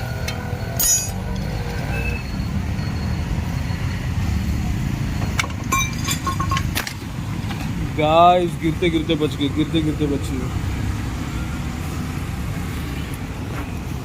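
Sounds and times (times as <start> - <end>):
metal tools clinking: 0.2 - 1.8, 5.2 - 7.7.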